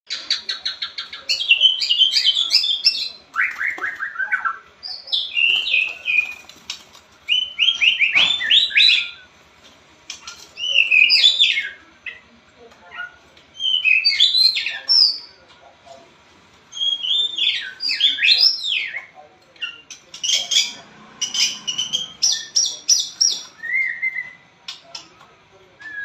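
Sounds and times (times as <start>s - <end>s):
bird singing whistled phrases: 13.6s - 15.2s, 16.8s - 19.0s, 21.8s - 24.4s, 25.8s - 26.0s.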